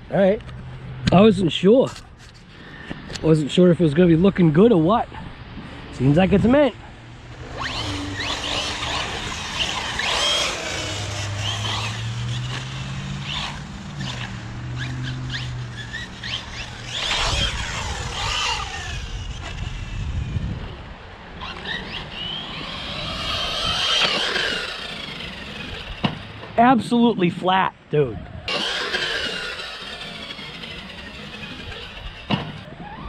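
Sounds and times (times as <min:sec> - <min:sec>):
electric motor whining: 0:06.3 - 0:26.5, 0:28.3 - 0:33.0.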